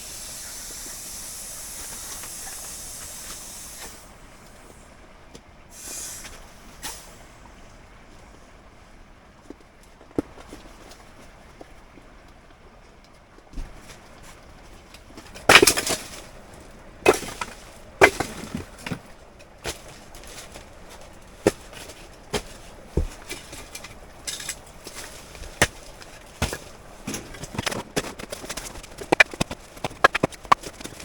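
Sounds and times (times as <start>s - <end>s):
firewood knocking and cracking: 15.0s - 31.0s.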